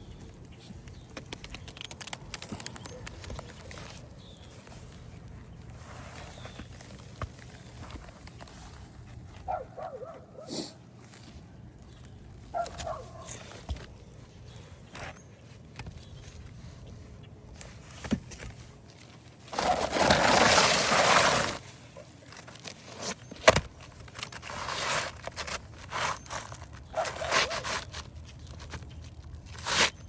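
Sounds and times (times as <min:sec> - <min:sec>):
scraping and rubbing: 0:19.4 - 0:30.0.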